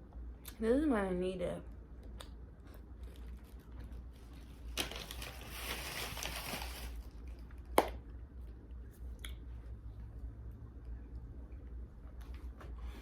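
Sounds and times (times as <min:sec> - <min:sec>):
crinkling and crunching food: 0:02.0 - 0:08.0.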